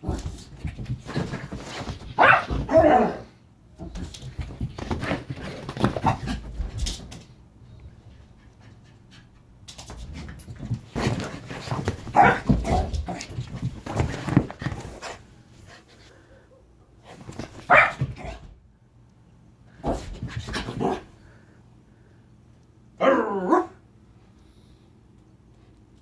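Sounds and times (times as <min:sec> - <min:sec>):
dog barking: 0:02.2 - 0:03.2, 0:12.2 - 0:12.5, 0:17.7 - 0:18.1, 0:23.0 - 0:23.8.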